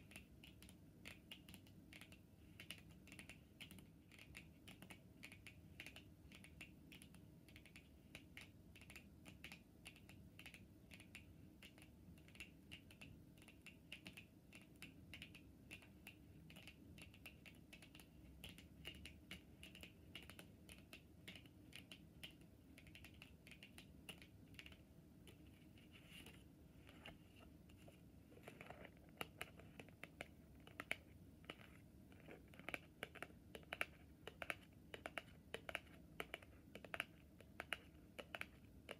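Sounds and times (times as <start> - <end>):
fingernails tapping on cards: 28.4 - 38.9.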